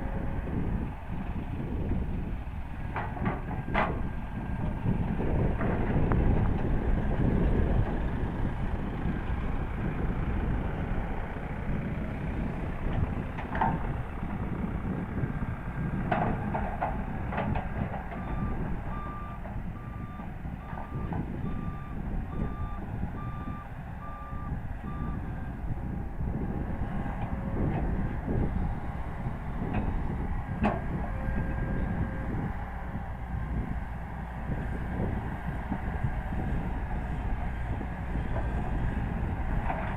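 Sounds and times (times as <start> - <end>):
diesel machinery rumbling: 0.0 - 39.9
reversing alarm beeping: 18.2 - 25.5.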